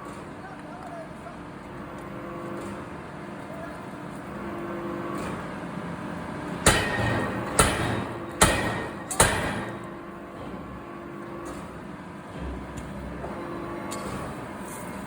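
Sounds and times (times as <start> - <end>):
factory machinery hum: 0.0 - 15.0
hammer blows on metal: 6.7 - 9.9.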